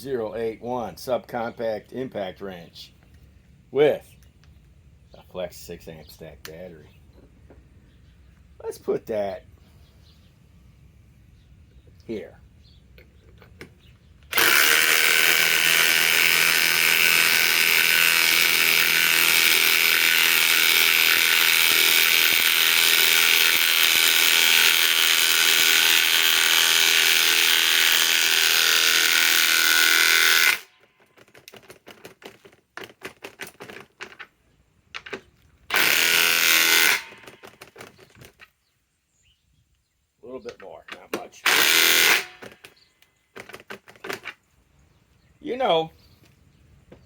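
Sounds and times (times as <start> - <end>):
impact wrench hammering: 14.3 - 33.8, 35.7 - 37.9, 41.2 - 42.7
short clicks and knocks: 30.4 - 38.6, 40.4 - 44.4.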